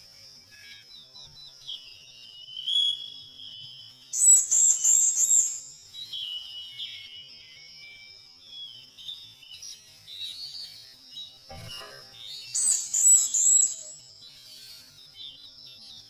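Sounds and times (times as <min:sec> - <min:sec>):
songbirds singing: 0:00.0 - 0:16.0
high-pitched drone: 0:11.5 - 0:12.3.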